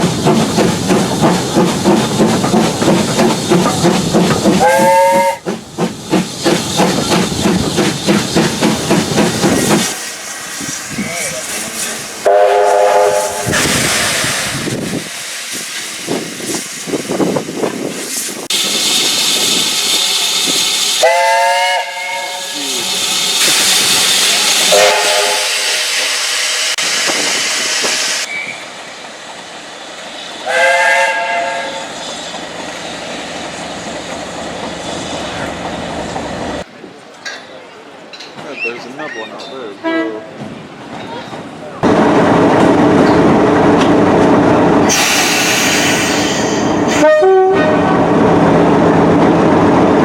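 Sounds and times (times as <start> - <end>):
train rushing noise: 0.0 - 37.1, 40.2 - 50.0
train horn blasts: 4.6 - 5.4, 12.2 - 13.5, 21.0 - 22.6, 24.7 - 26.0, 30.5 - 31.8, 46.9 - 47.9.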